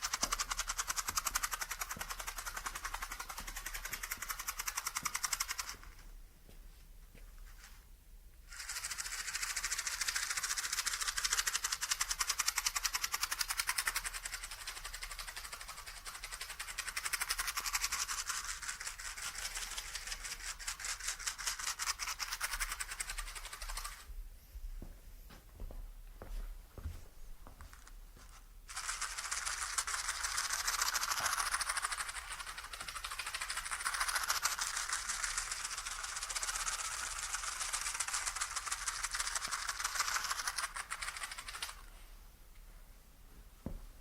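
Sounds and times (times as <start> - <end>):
matches rattling in matchbox: 0.0 - 5.9, 8.5 - 24.0, 27.7 - 41.9.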